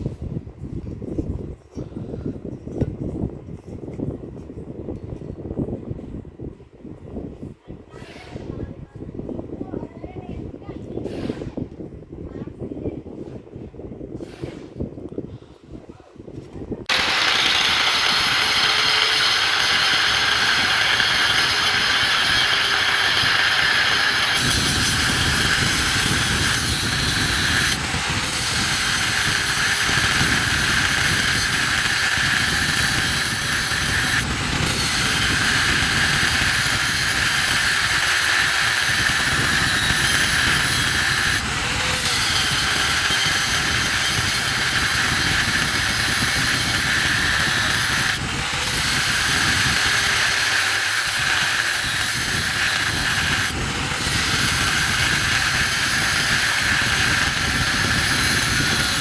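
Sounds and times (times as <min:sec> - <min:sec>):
loud machine rushing noise: 0:16.9 - 0:59.0.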